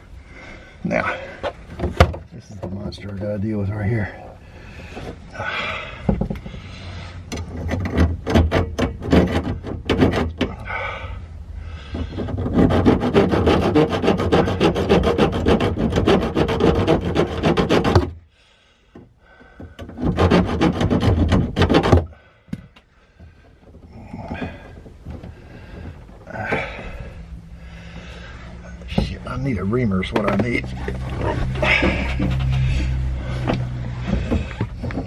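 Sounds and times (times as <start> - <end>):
hand saw cutting through pipe: 7.8 - 10.6, 12.0 - 18.2, 19.9 - 22.1, 30.7 - 34.8.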